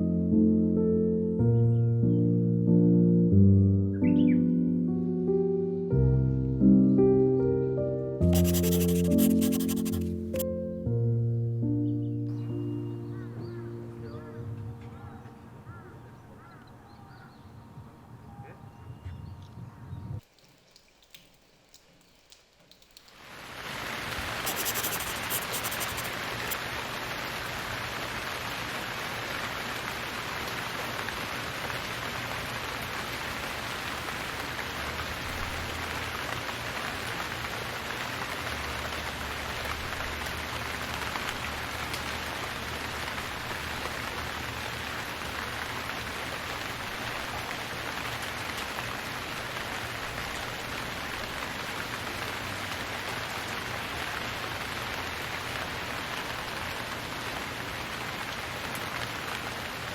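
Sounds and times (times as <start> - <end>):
water hissing: 24.4 - 26.6.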